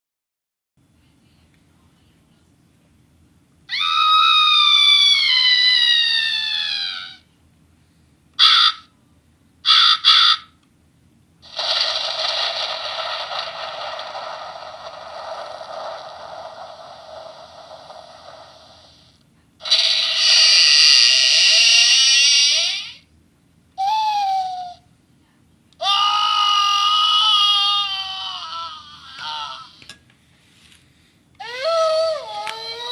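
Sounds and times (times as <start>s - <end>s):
toy spooky sound effects: 3.7s - 7.3s, 8.4s - 8.9s, 9.7s - 10.5s, 15.6s - 23.0s, 25.8s - 29.9s.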